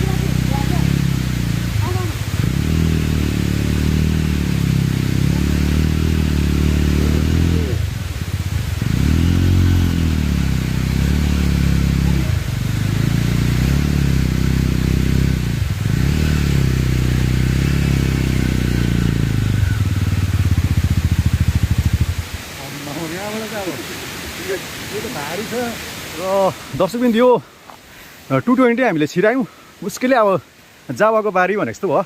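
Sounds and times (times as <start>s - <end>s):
motorcycle engine revving hard: 0.0s - 23.4s.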